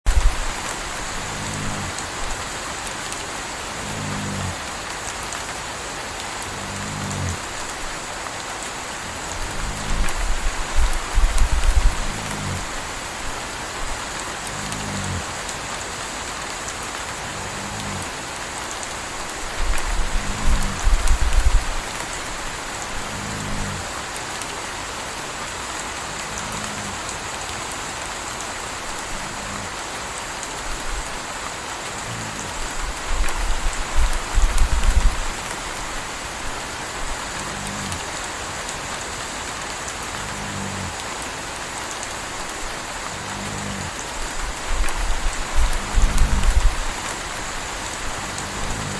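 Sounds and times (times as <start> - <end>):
steady rain: 0.0 - 48.9
puppy snoring: 0.1 - 2.4, 3.7 - 4.6, 6.4 - 7.8, 9.1 - 13.5, 14.4 - 15.4, 17.2 - 18.2, 19.4 - 23.9, 26.2 - 27.0, 29.0 - 29.8, 32.0 - 35.6, 37.0 - 38.0, 40.2 - 41.0, 42.9 - 47.2, 47.8 - 48.9
deep rumble: 9.2 - 14.0, 32.1 - 35.6, 43.1 - 48.9.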